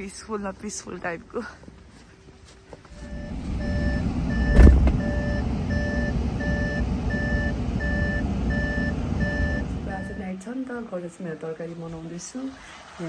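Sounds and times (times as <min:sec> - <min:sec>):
low engine and road rumble: 0:02.9 - 0:10.4
vehicle reversing beeper: 0:02.9 - 0:10.4
loud thump: 0:04.4 - 0:05.1.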